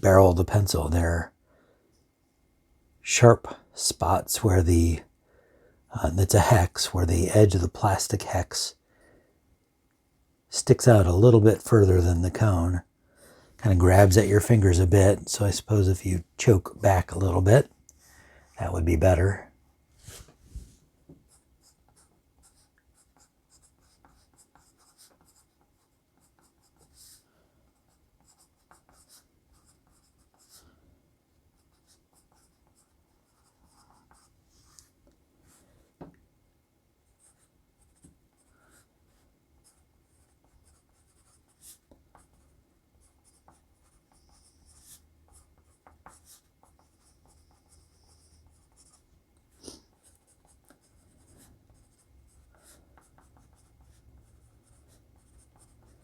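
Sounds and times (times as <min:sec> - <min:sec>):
pencil scratching on paper: 0:21.3 - 0:30.6, 0:31.6 - 0:34.8, 0:37.1 - 0:56.0.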